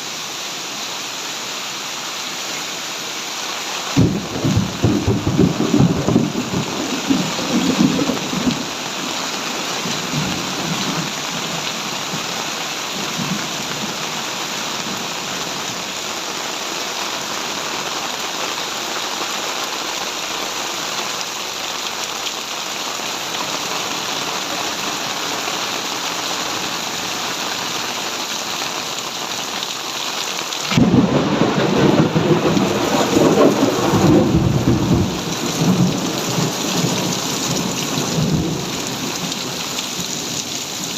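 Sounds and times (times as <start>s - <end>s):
heavy rain pouring: 0.0s - 40.9s
low rumbling thunder: 4.0s - 8.7s, 30.7s - 39.6s.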